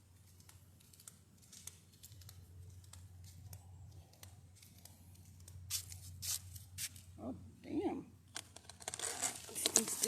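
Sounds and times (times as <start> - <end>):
faint clicks: 0.3 - 5.6.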